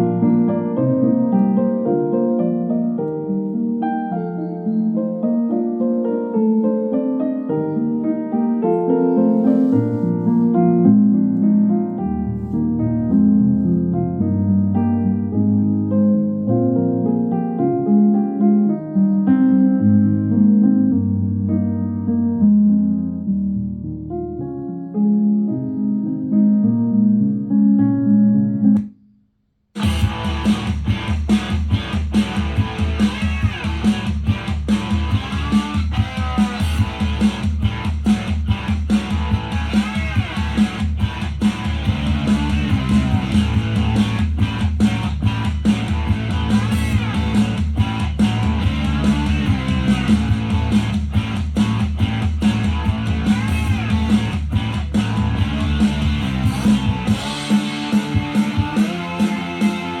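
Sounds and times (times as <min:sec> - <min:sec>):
pop song through speaker: 0:29.8 - 1:00.0.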